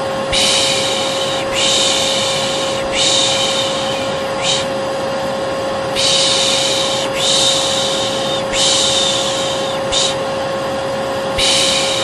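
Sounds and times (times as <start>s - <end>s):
vacuum cleaner humming: 0.0s - 12.0s
person shushing: 0.3s - 4.8s, 6.0s - 10.3s, 11.4s - 12.0s.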